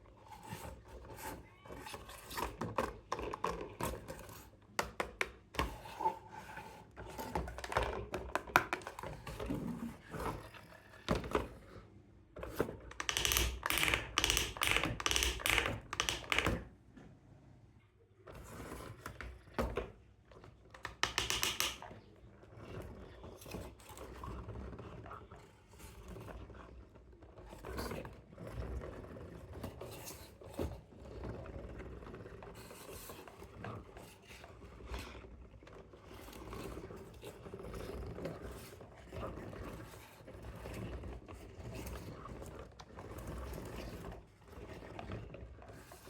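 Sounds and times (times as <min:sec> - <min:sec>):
toy handling clicks and knocks: 0:07.4 - 0:09.2, 0:12.5 - 0:16.7, 0:20.7 - 0:22.0.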